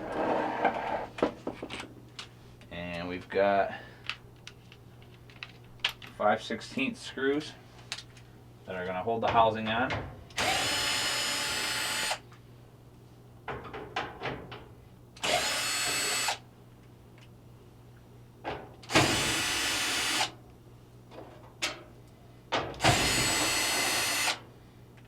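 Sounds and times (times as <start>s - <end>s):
small clicks and rattles: 4.0s - 6.2s
power drill spinning out screws: 10.4s - 12.2s, 15.2s - 16.4s, 18.9s - 20.3s, 22.8s - 24.4s.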